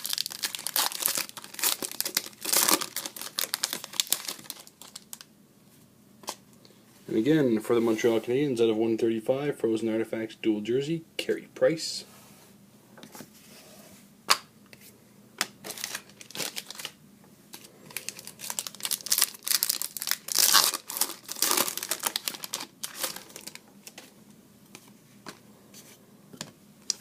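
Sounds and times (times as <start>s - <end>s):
foil wrapper crinkling and tearing: 0.0s - 5.3s, 15.6s - 17.0s, 17.6s - 24.0s.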